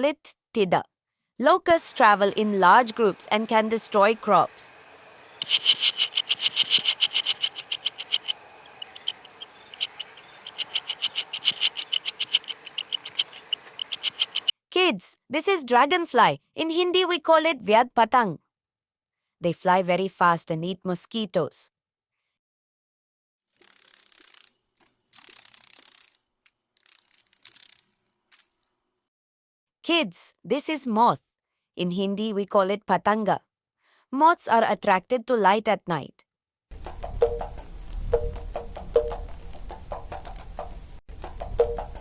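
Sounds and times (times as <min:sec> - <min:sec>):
dragonfly wings rattling buzz: 0:05.4 - 0:14.5, 0:23.6 - 0:24.5, 0:25.2 - 0:26.2, 0:26.8 - 0:27.8
locust chirping pulses: 0:05.4 - 0:14.5.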